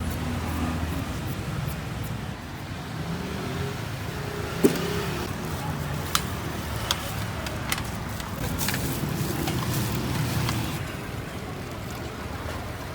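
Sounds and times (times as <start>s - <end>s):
street traffic: 0.0s - 12.9s
sharp clicks or knocks: 4.6s - 5.3s.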